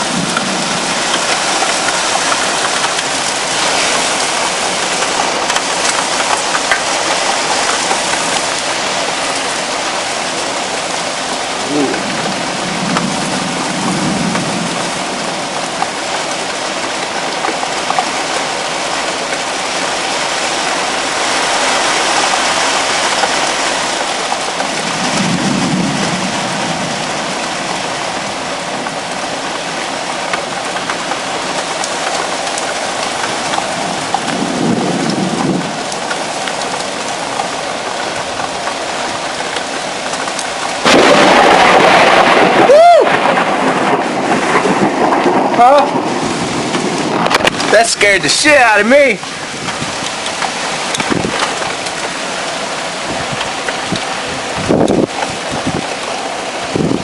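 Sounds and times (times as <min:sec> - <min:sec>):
heavy rain falling: 0:00.0 - 0:57.0
low rumbles of thunder: 0:11.6 - 0:15.4, 0:24.7 - 0:27.4, 0:33.8 - 0:36.0, 0:40.8 - 0:47.8
loud lightning crack: 0:40.8 - 0:50.0.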